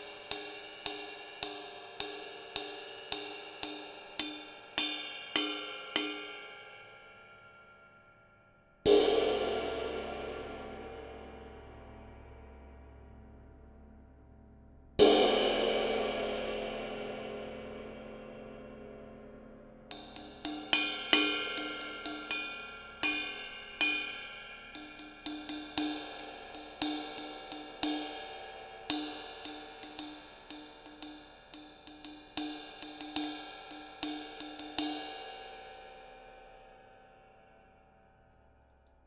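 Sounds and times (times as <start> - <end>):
cymbal struck and ringing: 0.0 - 8.3, 19.9 - 36.3.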